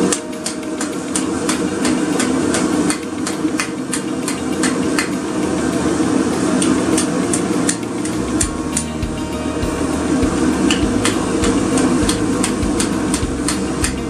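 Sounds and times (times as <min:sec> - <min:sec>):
low hum: 0:08.1 - 0:14.0.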